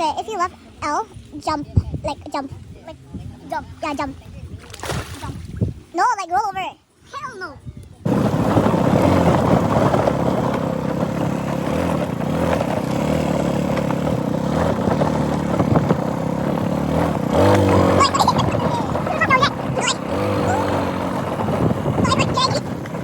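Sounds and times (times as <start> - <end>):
vehicle engine running: 8.0 - 23.0.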